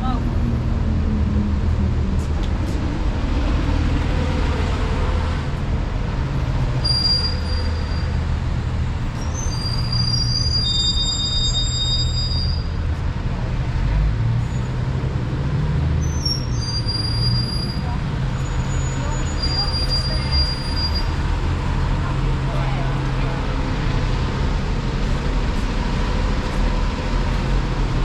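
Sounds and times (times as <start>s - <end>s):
large vehicle engine humming: 0.0s - 28.0s
high whistling tones: 6.8s - 8.2s.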